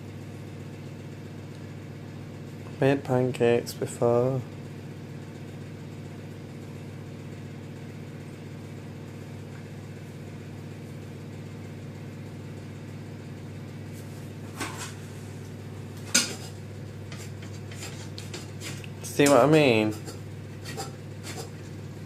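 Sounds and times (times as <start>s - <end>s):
steady low hum: 0.0s - 22.0s
utensil scraping a frying pan: 16.1s - 18.8s, 19.8s - 21.6s.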